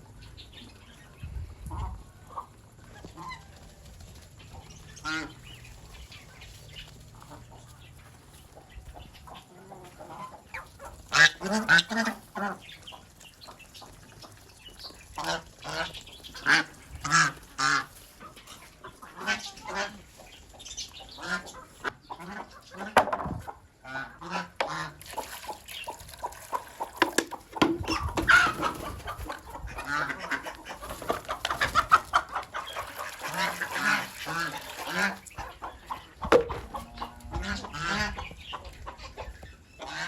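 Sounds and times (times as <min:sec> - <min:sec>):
chickens clucking: 0:00.0 - 0:40.0
ducks quacking: 0:00.2 - 0:03.8, 0:04.4 - 0:40.0.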